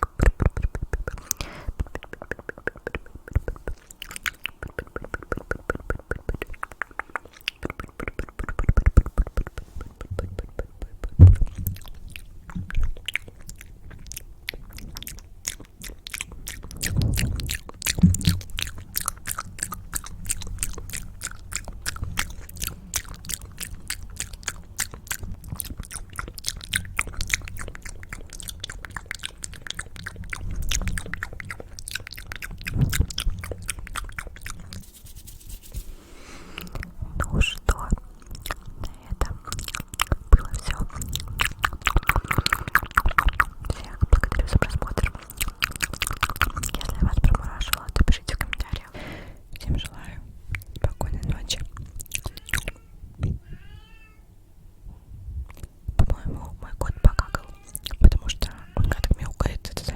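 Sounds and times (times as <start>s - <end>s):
wet mouth clicks and smacks: 0.0s - 35.8s, 36.6s - 48.9s, 49.5s - 52.8s, 55.5s - 59.9s
low thumps: 11.1s - 11.8s.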